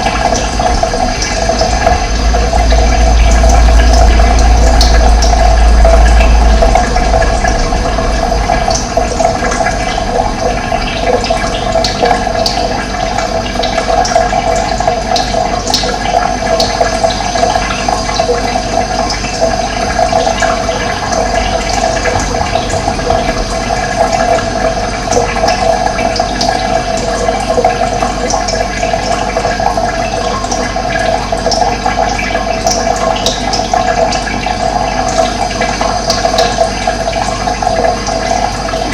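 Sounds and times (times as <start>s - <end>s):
deep rumble: 0.0s - 14.9s, 18.2s - 28.1s
running water rushing: 0.0s - 38.9s.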